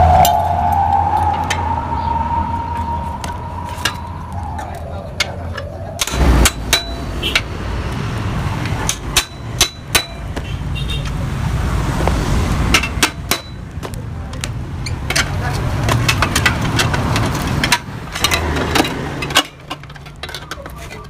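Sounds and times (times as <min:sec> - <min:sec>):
hammer striking metal: 0:06.0 - 0:07.6, 0:08.6 - 0:10.4, 0:12.7 - 0:13.7.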